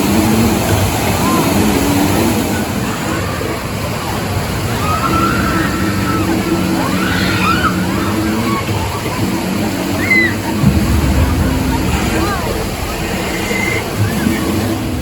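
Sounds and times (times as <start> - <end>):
even wash of noise: 0.0 - 15.0
faint distant voices: 0.0 - 15.0
steady low hum: 10.5 - 15.0.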